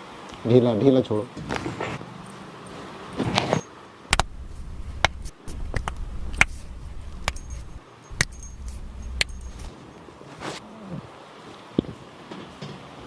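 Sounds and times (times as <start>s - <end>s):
spinal joints cracking: 4.1s - 9.7s
low rumble: 4.2s - 9.7s.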